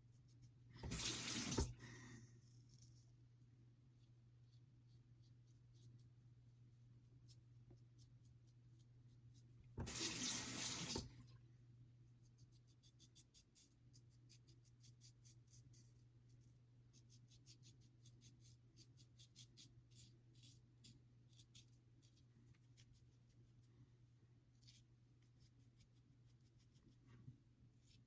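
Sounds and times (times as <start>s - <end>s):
tap running: 0.8s - 1.8s, 9.8s - 11.2s.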